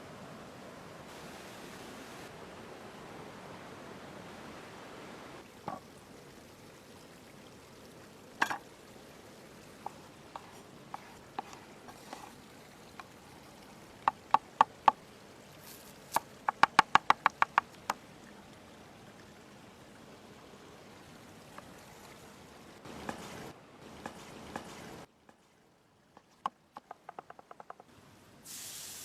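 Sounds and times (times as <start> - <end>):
short hiss: 28.4 - 29.0.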